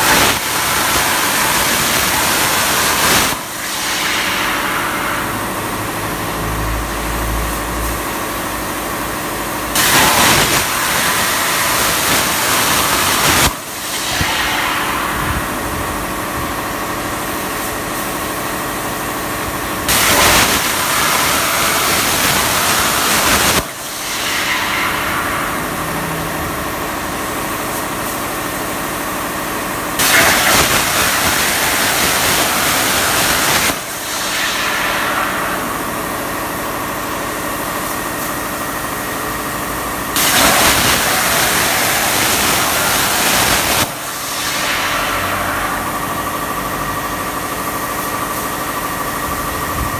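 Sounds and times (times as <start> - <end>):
plasma arc hissing: 0.0 - 29.0, 30.0 - 49.7
steady machine hum: 0.0 - 49.9.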